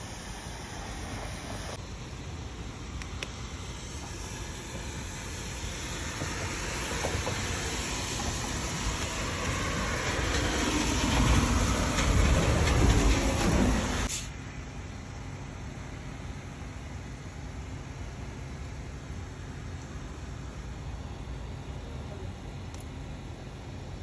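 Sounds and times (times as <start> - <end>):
vehicle rumbling: 0.0 - 24.0.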